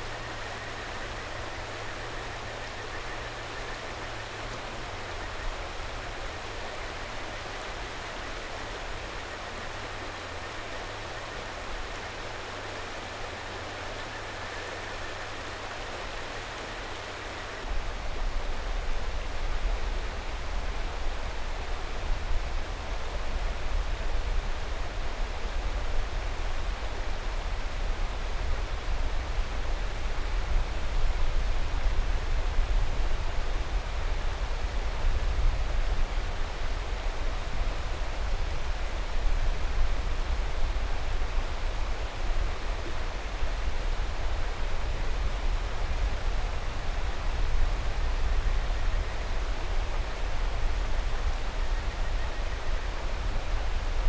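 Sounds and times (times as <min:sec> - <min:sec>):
river rushing: 0:00.0 - 0:54.0.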